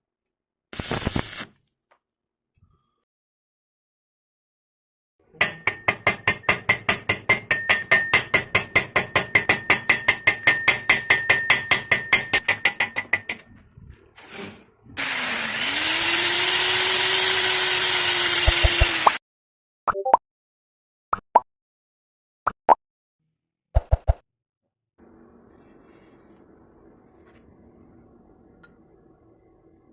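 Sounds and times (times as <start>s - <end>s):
hammer striking metal: 5.4s - 13.5s
power tool humming: 15.0s - 19.2s.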